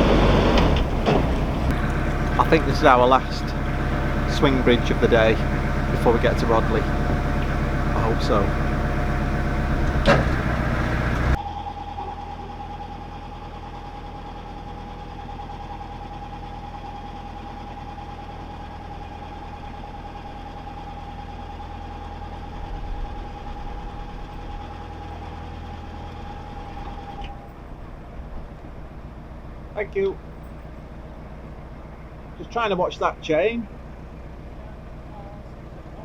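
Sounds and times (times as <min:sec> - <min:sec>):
high whine: 0:00.0 - 0:13.2
boat engine running at low revs: 0:00.0 - 0:36.0.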